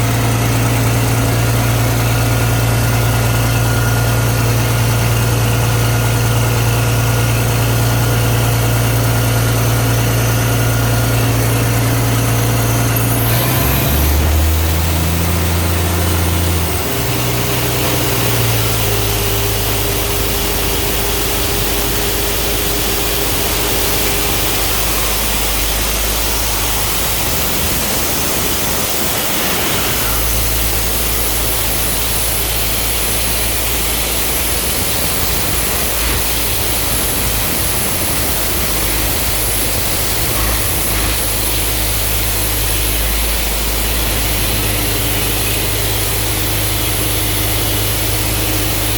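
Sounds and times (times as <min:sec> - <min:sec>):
diesel air compressor running: 0:00.0 - 0:48.9
compressor hiss: 0:12.8 - 0:48.9.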